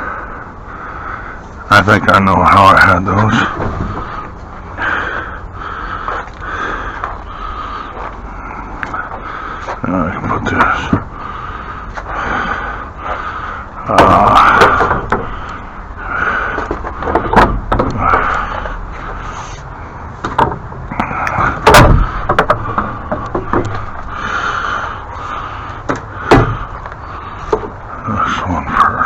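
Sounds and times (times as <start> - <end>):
objects knocking and scraping: 3.2 - 4.4, 13.9 - 15.6, 16.5 - 19.3, 20.2 - 24.2, 25.8 - 27.8.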